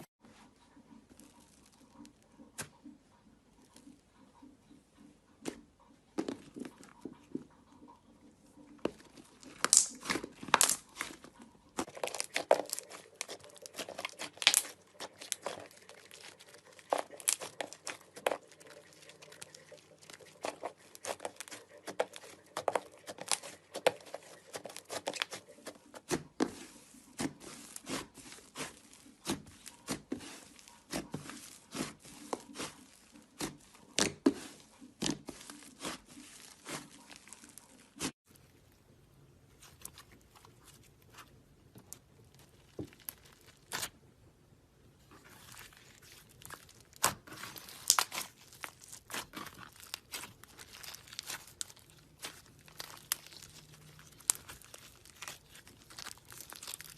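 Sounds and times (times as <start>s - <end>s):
slime crackling and popping: 8.9s - 26.6s, 41.1s - 44.0s, 45.2s - 56.9s.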